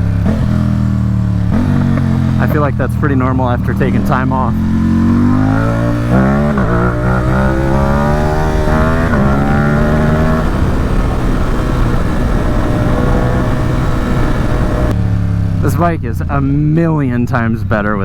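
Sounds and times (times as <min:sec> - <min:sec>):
motorcycle engine revving: 0:00.0 - 0:18.0
wind rushing: 0:03.9 - 0:15.5.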